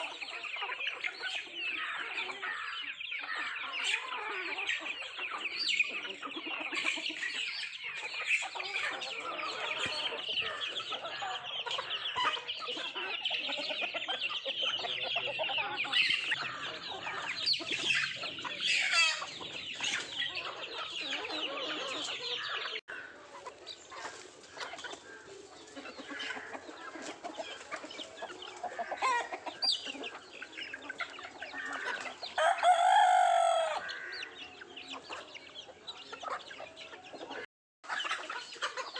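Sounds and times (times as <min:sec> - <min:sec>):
chickens clucking and chirping: 0:00.0 - 0:38.9
loud rooster call: 0:32.4 - 0:34.0.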